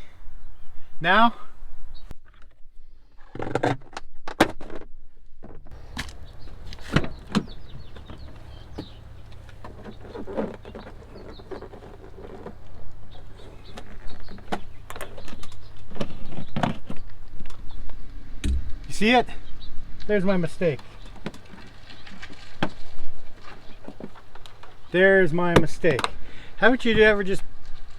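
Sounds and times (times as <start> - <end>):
steady low hum: 17.2 - 21.6
clicks and knocks of handling: 25.6 - 26.2.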